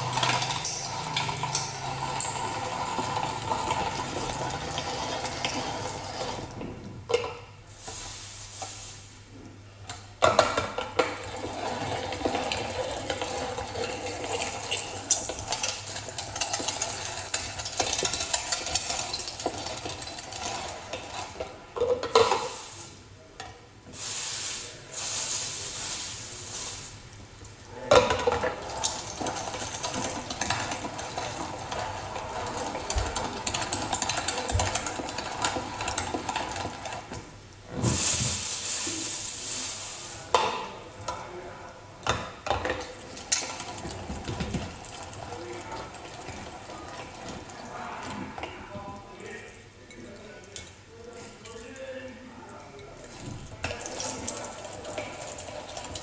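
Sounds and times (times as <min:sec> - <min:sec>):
manual meat grinder grinding: 0:00.0 - 0:06.6, 0:11.0 - 0:22.3, 0:28.4 - 0:37.2.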